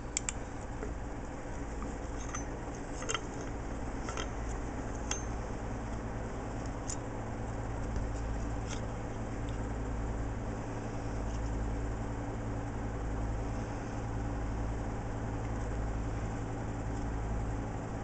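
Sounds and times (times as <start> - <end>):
steady low hum: 0.0 - 18.0
allen wrench metal clicks: 2.1 - 5.4.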